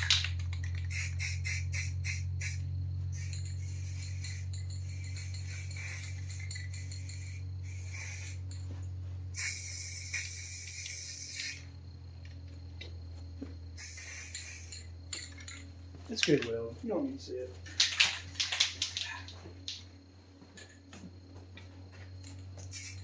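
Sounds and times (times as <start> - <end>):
bursts of hissing: 0.0 - 8.6, 9.3 - 11.8, 13.8 - 15.0, 22.6 - 23.0
steady low hum: 0.0 - 23.0.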